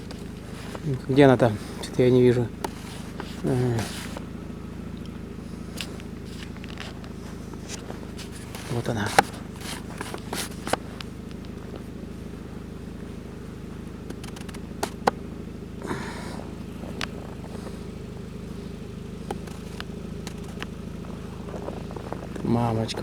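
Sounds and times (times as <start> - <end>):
engine idling: 0.0 - 23.0
sharp clicks: 14.0 - 15.2.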